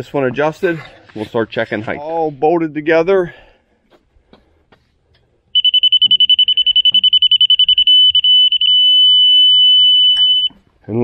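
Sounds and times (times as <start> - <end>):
rapid high-pitched beeps: 5.6 - 10.5.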